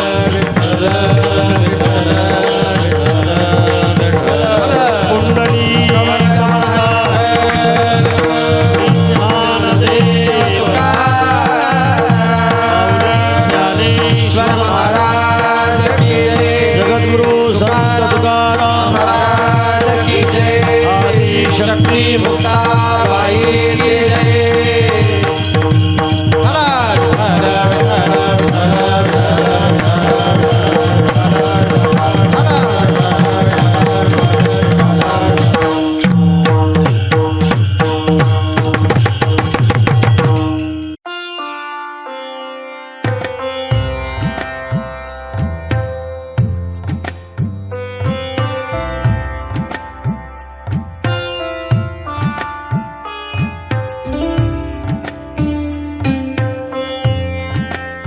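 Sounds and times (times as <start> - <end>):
person singing a melody: 0.0 - 35.9
hand drum playing: 0.0 - 41.0, 43.7 - 57.8.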